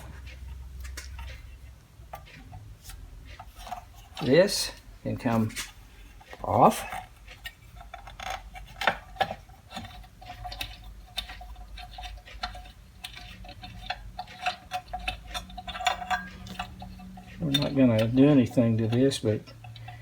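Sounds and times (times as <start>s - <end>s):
fast metallic ticking: 9.7s - 20.0s.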